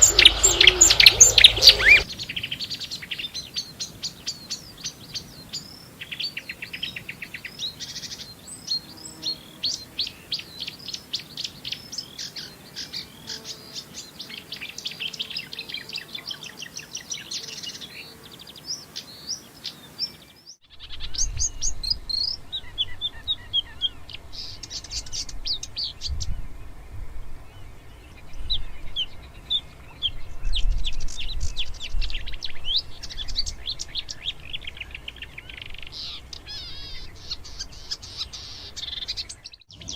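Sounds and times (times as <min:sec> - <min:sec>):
low rumble: 0:00.0 - 0:02.2
warbler singing: 0:00.0 - 0:26.6, 0:27.4 - 0:39.9.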